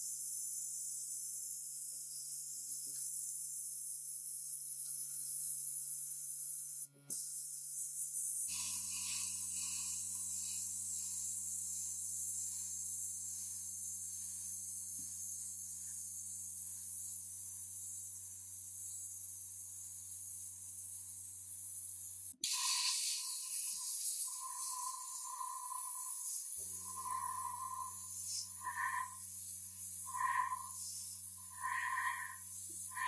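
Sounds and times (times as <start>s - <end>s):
air spray hissing: 21.8s - 33.0s.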